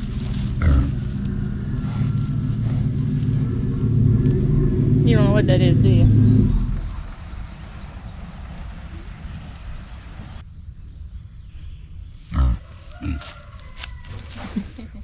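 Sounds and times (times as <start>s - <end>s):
pig grunting: 0.0s - 7.0s, 12.2s - 13.4s.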